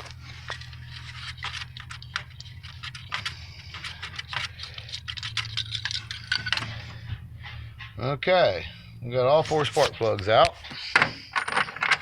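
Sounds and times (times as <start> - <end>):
steady low hum: 0.0 - 12.0
hand tools clicking and tapping: 1.4 - 6.8.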